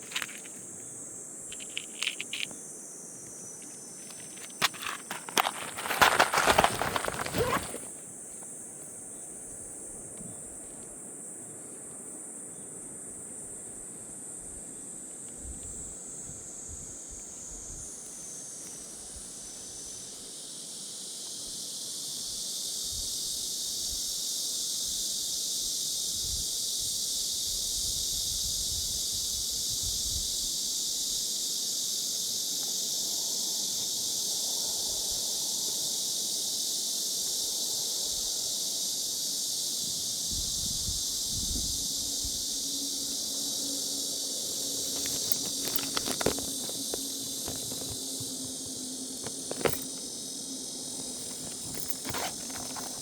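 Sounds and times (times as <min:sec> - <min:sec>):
high-pitched insect chorus: 0:00.0 - 0:53.0
wind buffeting microphone: 0:40.3 - 0:42.4.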